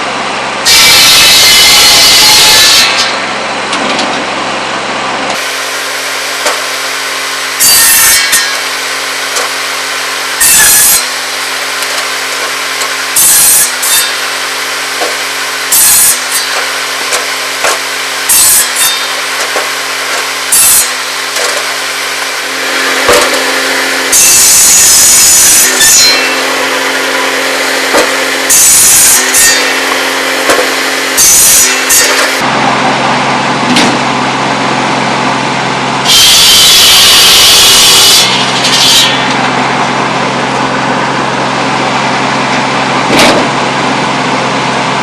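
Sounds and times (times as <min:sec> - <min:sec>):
saw cutting through wood: 0:00.6 - 0:03.4, 0:05.3 - 0:35.3, 0:36.0 - 0:44.4
circular saw blade humming: 0:05.3 - 0:33.0.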